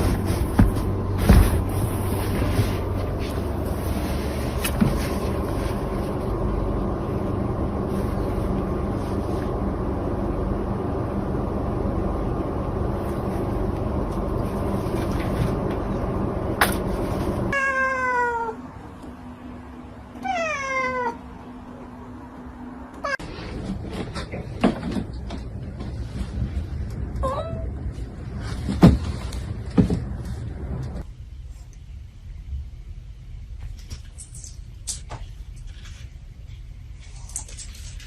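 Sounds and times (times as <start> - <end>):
steady rumbling noise: 0.0 - 17.6, 18.5 - 38.0
cat meowing: 17.5 - 18.6, 20.2 - 21.2.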